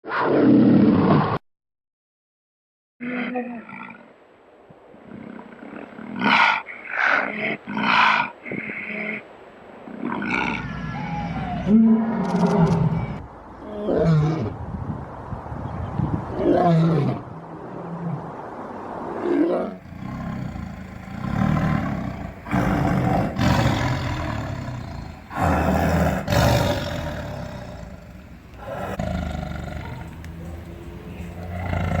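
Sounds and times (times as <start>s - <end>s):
big cat roaring: 19.2s - 32.0s.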